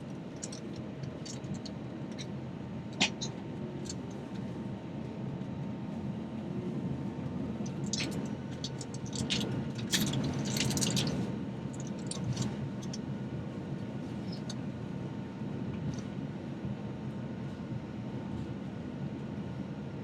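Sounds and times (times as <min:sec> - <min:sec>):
airliner cabin rumble: 0:00.0 - 0:20.0
crinkling and clicking: 0:00.4 - 0:02.3, 0:07.7 - 0:11.2.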